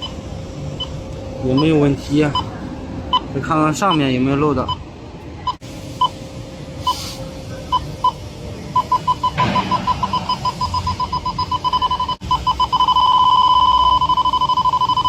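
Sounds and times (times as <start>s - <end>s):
leak detector beeping: 0.0s - 2.5s, 5.4s - 6.2s, 6.8s - 15.0s.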